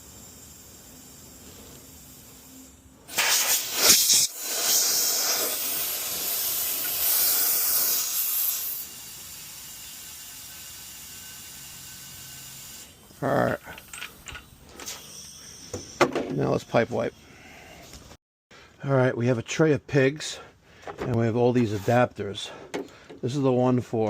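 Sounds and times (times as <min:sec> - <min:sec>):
gas hissing through pipe: 0:00.0 - 0:16.0.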